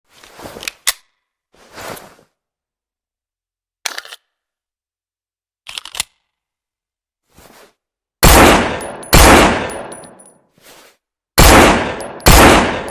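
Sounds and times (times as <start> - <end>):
pistol clatter: 8.7 - 10.4.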